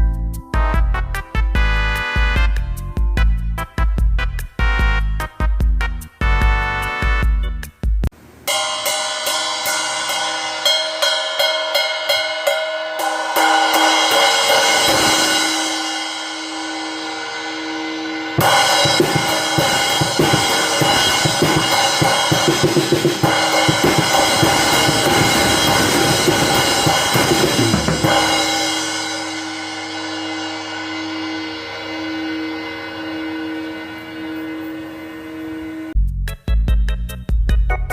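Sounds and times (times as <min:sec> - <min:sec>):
bass drum: 0:00.0 - 0:08.1, 0:18.4 - 0:29.3, 0:36.0 - 0:37.9
cymbal crash: 0:08.2 - 0:36.0
cymbal strokes: 0:08.3 - 0:36.0
snare drum: 0:18.4 - 0:29.2.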